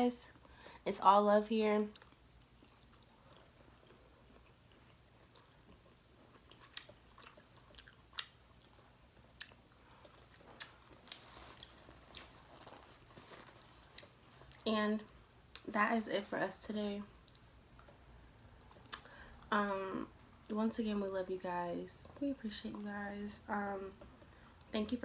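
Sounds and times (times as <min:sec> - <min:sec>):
person chewing with crunches: 0:01.9 - 0:14.7, 0:17.2 - 0:19.5.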